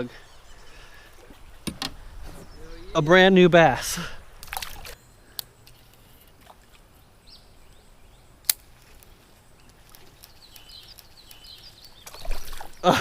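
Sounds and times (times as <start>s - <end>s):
faint bird chirps: 9.1s - 12.7s.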